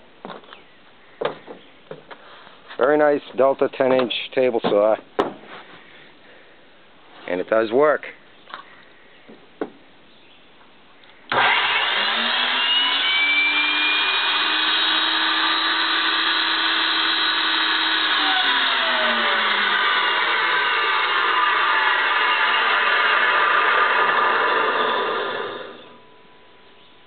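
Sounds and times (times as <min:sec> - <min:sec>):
table saw running: 0:11.3 - 0:26.1.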